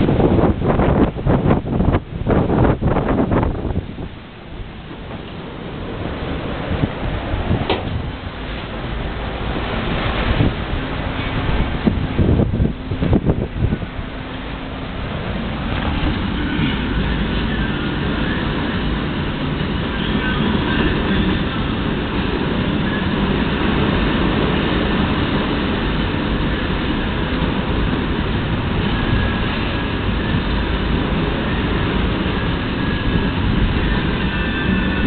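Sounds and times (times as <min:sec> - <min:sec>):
wind rushing: 0:00.0 - 0:19.9
water rushing past a yacht: 0:00.0 - 0:35.0.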